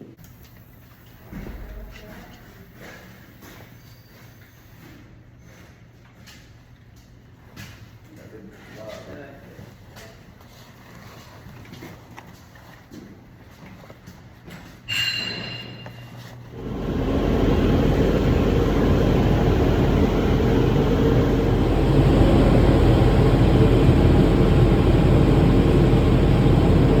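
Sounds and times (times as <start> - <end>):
short ringing clink: 14.9 - 16.2
loud low rumbling noise: 16.5 - 27.0.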